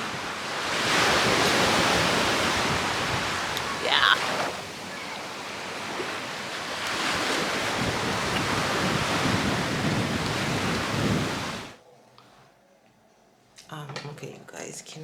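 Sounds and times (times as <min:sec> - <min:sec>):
surf washing on beach: 0:00.0 - 0:11.8
wind on microphone: 0:00.0 - 0:11.8.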